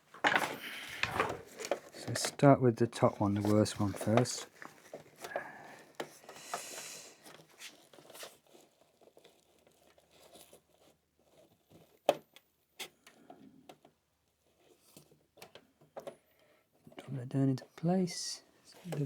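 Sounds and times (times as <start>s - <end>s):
fabric rustling: 0.0s - 2.2s.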